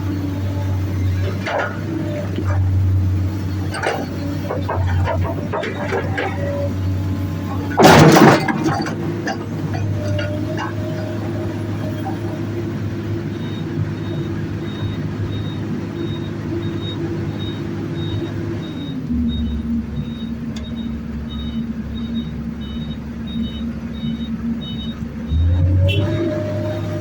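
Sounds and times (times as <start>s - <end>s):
heavy diesel machinery running: 0.0s - 27.0s
reversing alarm beeping: 13.2s - 26.8s.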